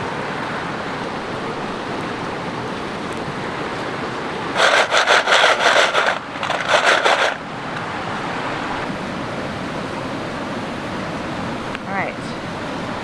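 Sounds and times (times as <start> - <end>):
creek rushing: 0.0 - 13.0
quick rasping strokes: 4.6 - 7.4.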